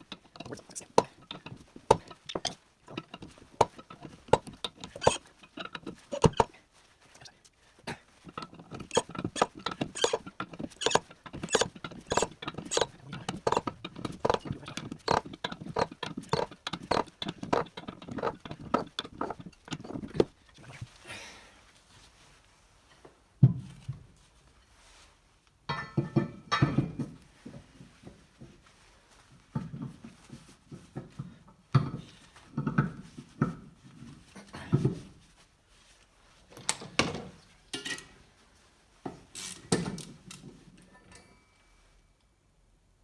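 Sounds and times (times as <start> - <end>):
wrench ratchet metallic clicks: 1.3 - 5.2, 6.0 - 6.5, 8.8 - 18.9.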